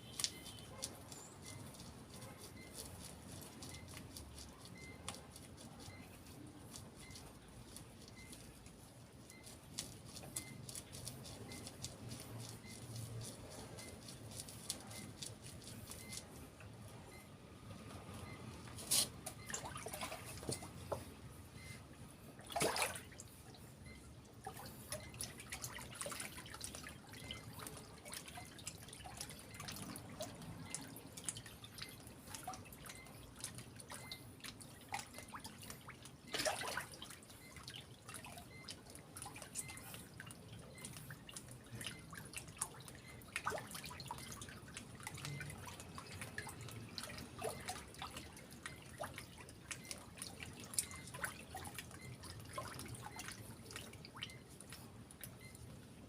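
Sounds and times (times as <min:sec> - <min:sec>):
water dripping: 0:00.0 - 0:08.5, 0:22.3 - 0:55.7
louder water splashes: 0:22.5 - 0:23.0.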